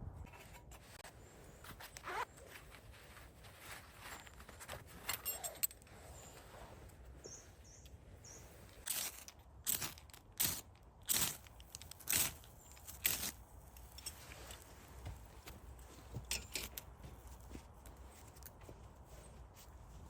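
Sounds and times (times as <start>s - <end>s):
faint clicks and rustles: 0.2s - 20.0s.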